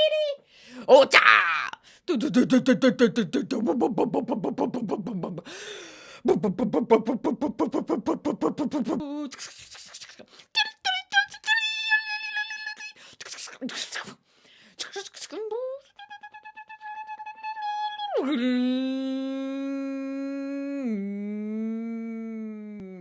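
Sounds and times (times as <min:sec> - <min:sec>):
rasping vocal sputter: 0:00.8 - 0:05.6, 0:06.2 - 0:10.3.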